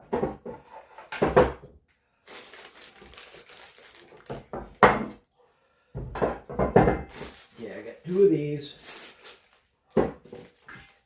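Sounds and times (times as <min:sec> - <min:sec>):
packaging crinkling and rustling: 0:02.2 - 0:04.8, 0:07.1 - 0:11.0.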